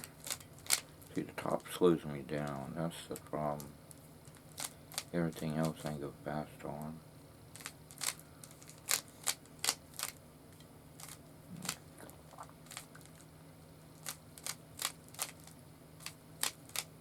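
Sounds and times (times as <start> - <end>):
puzzle cube plastic clicks: 7.6 - 10.2, 14.0 - 16.9.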